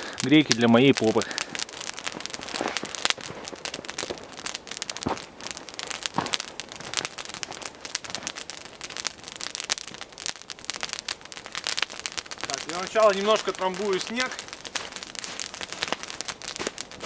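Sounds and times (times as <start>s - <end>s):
dry brushwood crackling: 0.0s - 17.0s.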